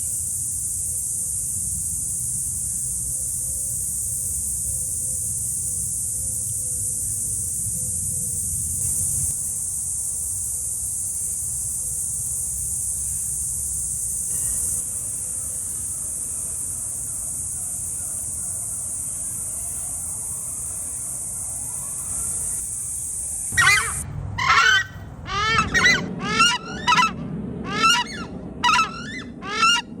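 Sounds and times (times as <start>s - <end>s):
high-pitched hiss: 0.0s - 24.0s
faint hum: 0.0s - 30.0s
low rumble: 23.5s - 30.0s
bird honking calls: 23.6s - 30.0s.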